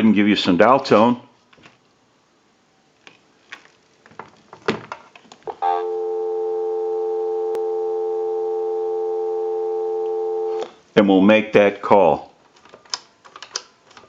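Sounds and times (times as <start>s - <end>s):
telephone dial tone: 5.6s - 10.7s.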